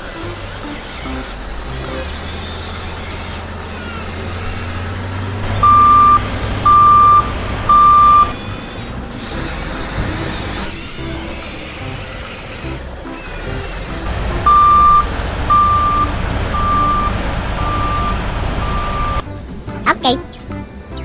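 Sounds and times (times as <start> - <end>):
low engine rumble: 0.0 - 21.0
high electronic beeps: 5.4 - 8.4, 14.4 - 19.2.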